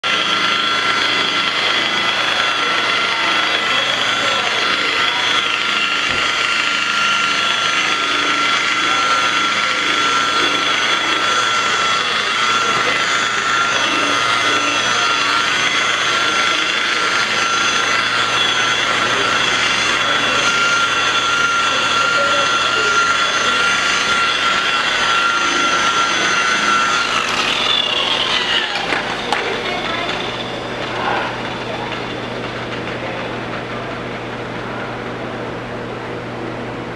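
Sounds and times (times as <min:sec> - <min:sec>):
electric power buffer whining: 0:00.0 - 0:36.9.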